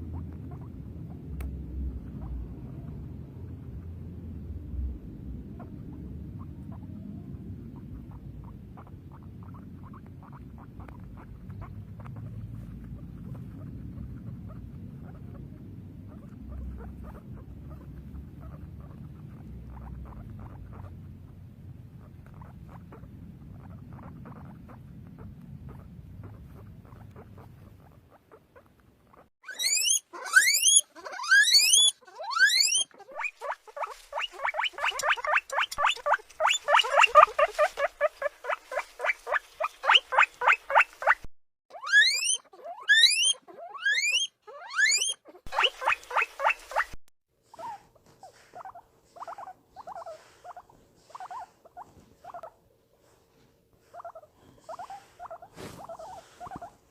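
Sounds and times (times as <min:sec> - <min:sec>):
guinea pig squeaks: 0:00.0 - 0:03.9, 0:05.5 - 0:53.2, 0:53.8 - 0:56.9
guinea pig wheeking: 0:00.0 - 0:04.1, 0:05.4 - 0:56.9
low rustling: 0:33.2 - 0:41.2.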